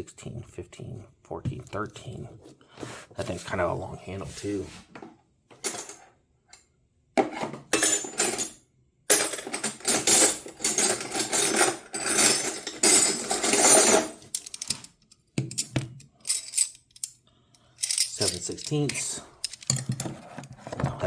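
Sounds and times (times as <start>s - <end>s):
metal wrenches clinking: 7.8s - 14.9s, 15.5s - 17.2s, 17.8s - 20.5s.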